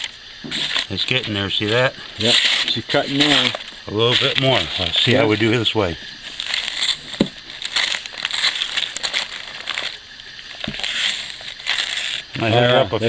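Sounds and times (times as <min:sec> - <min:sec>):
knife cutting paper: 0:00.0 - 0:13.0.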